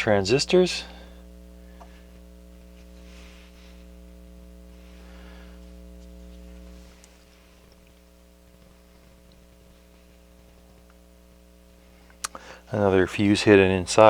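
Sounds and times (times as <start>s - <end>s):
electrical mains hum: 0.0s - 14.0s
faint handling rustle: 1.8s - 4.1s.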